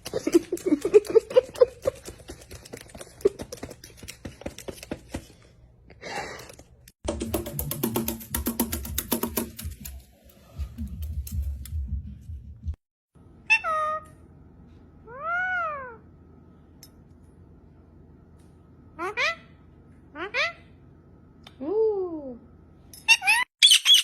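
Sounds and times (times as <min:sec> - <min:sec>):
music: 0:07.0 - 0:12.8.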